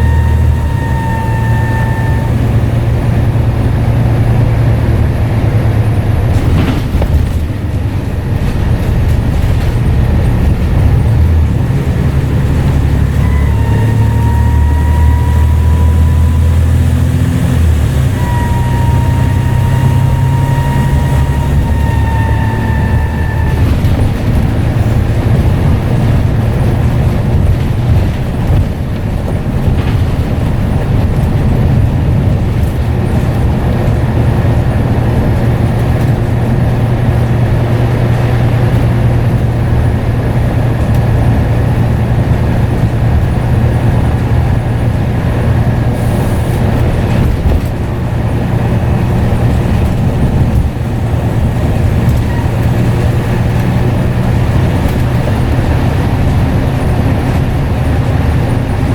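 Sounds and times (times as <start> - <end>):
turbo whistle: 0.0 - 2.8, 12.2 - 24.0
bus engine hum: 0.0 - 58.9
road rumble: 0.0 - 58.9.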